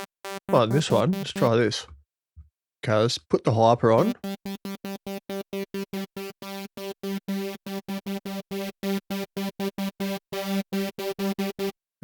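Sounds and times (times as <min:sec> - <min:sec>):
synth staccato notes: 0:00.0 - 0:01.6, 0:04.0 - 0:11.7.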